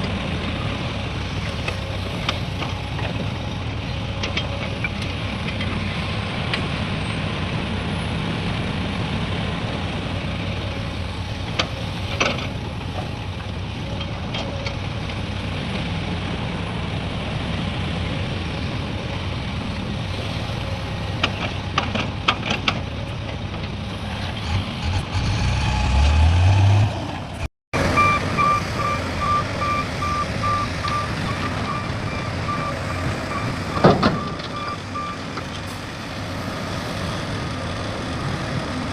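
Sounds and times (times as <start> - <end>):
diesel machinery engine running: 0.0 - 38.9
reversing alarm beeping: 27.9 - 35.3.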